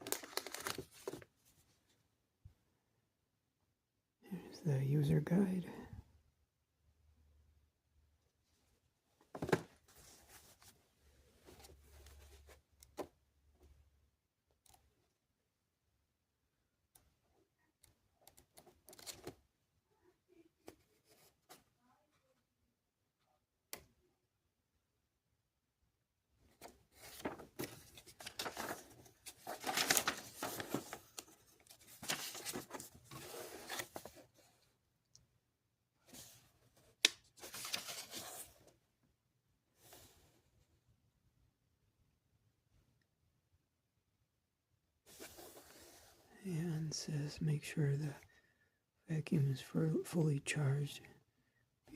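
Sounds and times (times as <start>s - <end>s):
paper rustling: 0.0s - 1.6s, 26.5s - 34.5s, 37.4s - 38.7s.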